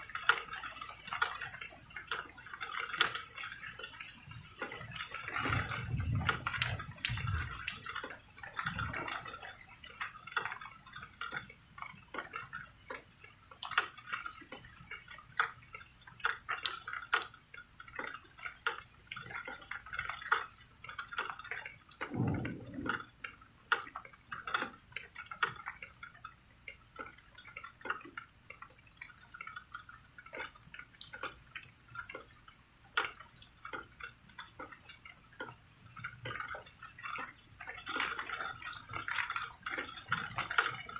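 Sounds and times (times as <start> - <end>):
rain dripping and pattering: 0.0 - 40.9
low rumble: 22.0 - 23.3.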